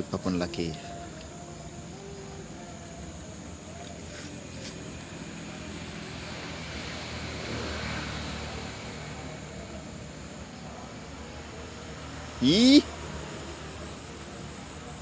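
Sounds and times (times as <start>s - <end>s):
vehicle passing on road: 0.0s - 15.0s.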